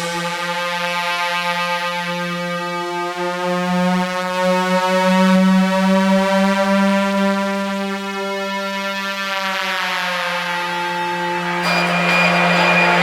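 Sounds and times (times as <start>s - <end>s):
long synthesizer note: 11.6s - 13.0s.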